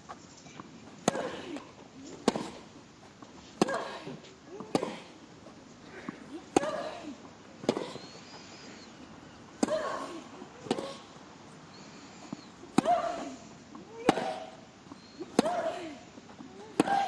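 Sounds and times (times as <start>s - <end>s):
racket hitting tennis ball: 1.0s - 2.7s, 3.6s - 5.1s, 12.7s - 13.3s, 14.0s - 14.6s, 15.2s - 15.8s, 16.6s - 17.0s.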